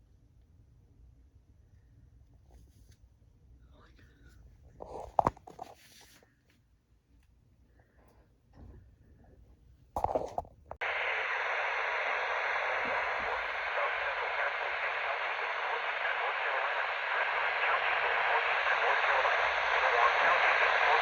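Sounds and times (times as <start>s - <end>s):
radio static hiss: 10.0s - 21.0s.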